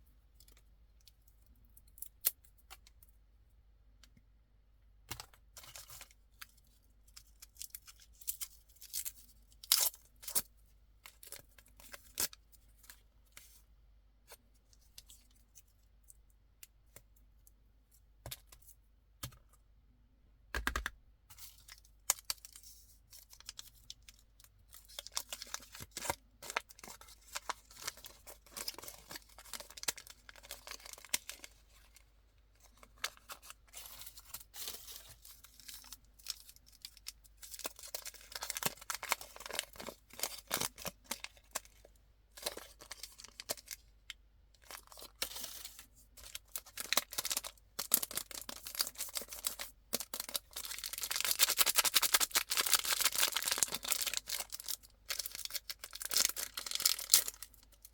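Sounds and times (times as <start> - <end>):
candy wrappers crinkling and tearing: 21.4 - 32.0, 32.6 - 43.9, 44.6 - 57.9.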